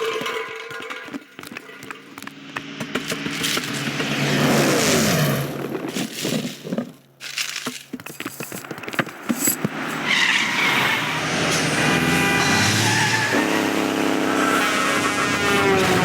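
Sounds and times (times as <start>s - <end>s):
knocks and clatter: 0.0s - 10.1s
car engines running: 0.8s - 16.0s
car tires squealing: 9.6s - 16.0s.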